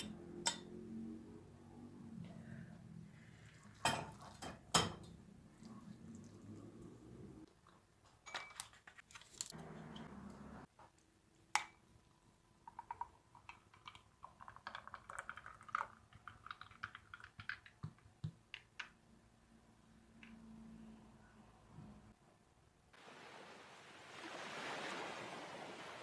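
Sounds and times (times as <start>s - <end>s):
small objects clicking and tapping: 12.6s - 19.0s.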